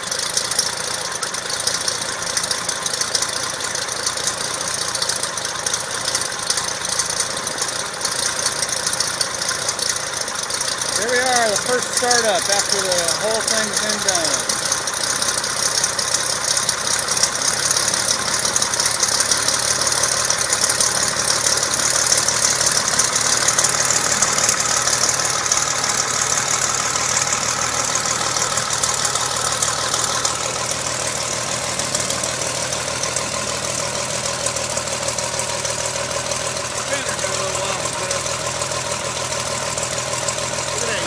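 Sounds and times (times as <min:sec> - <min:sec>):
aircraft engine running: 0:09.8 - 0:41.0.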